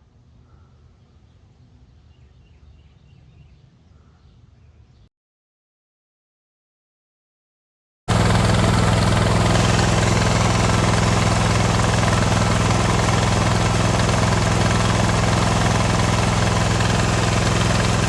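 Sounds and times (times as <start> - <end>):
mower engine idling: 8.1 - 18.0.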